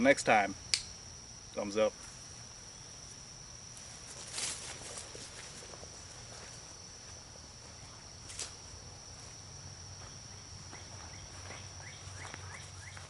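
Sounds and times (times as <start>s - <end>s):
insect trill: 0.0s - 13.0s
sharp click: 0.7s - 1.0s.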